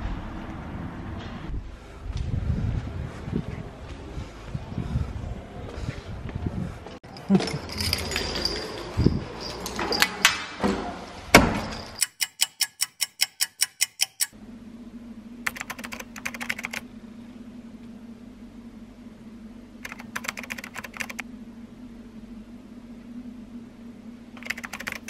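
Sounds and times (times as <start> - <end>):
steady low hum: 0.0 - 9.3, 13.8 - 25.0
evenly spaced sharp clicks: 12.0 - 14.4, 15.5 - 16.8, 19.8 - 21.2, 24.4 - 25.0
typing on keyboard: 15.5 - 16.8, 19.8 - 21.2, 24.4 - 25.0.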